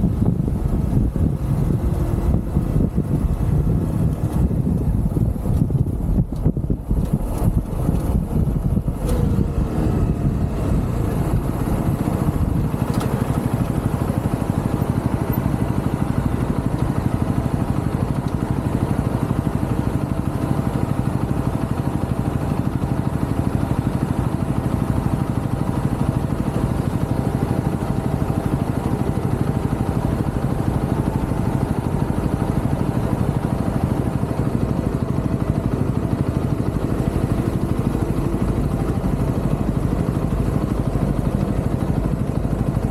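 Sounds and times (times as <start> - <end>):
motorcycle engine idling: 10.2 - 42.9.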